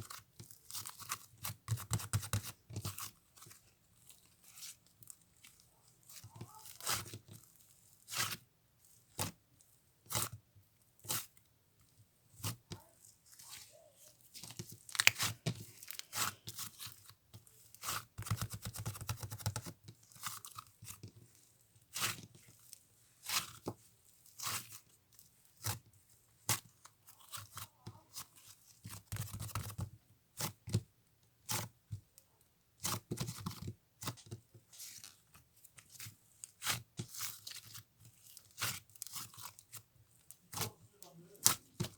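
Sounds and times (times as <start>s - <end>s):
slime squishing with sticky pops: 12.4s - 22.4s.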